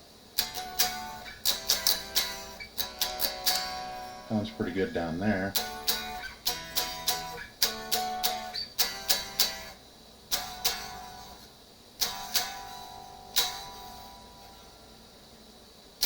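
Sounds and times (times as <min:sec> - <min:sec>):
electric guitar notes and chords: 0:00.4 - 0:15.0.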